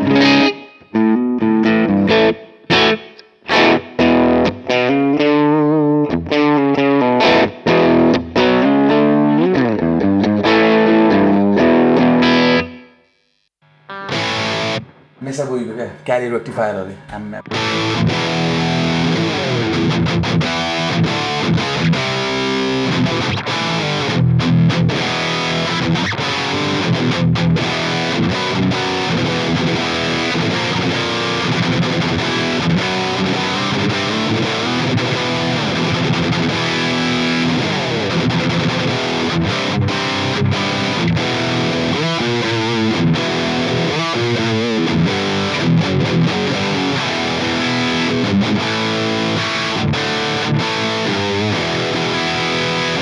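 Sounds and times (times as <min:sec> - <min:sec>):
distorted electric guitar riffing: 0:13.9 - 0:53.0.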